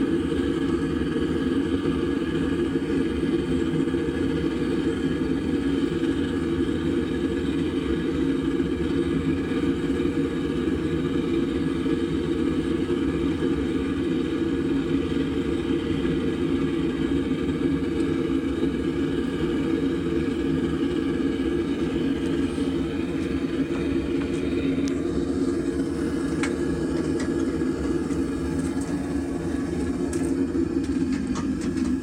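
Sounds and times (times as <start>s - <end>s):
forge burner rushing: 0.0s - 32.0s.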